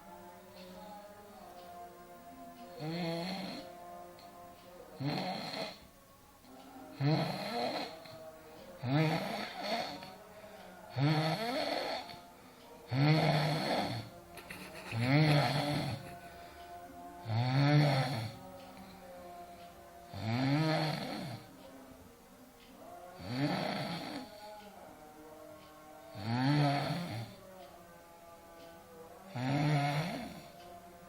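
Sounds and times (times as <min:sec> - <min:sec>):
person snoring loudly: 0:02.8 - 0:03.7, 0:05.0 - 0:05.8, 0:07.0 - 0:08.1, 0:08.8 - 0:10.1, 0:10.9 - 0:12.2, 0:12.9 - 0:16.5, 0:17.2 - 0:18.4, 0:20.1 - 0:21.5, 0:23.2 - 0:24.5, 0:26.1 - 0:27.4, 0:29.3 - 0:30.6.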